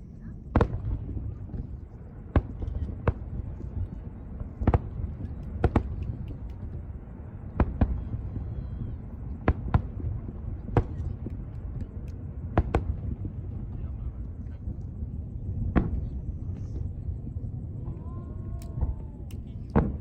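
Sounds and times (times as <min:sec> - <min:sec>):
steady low rumble: 0:00.0 - 0:20.0
fireworks bangs: 0:00.5 - 0:14.5, 0:15.5 - 0:16.9, 0:18.7 - 0:20.0.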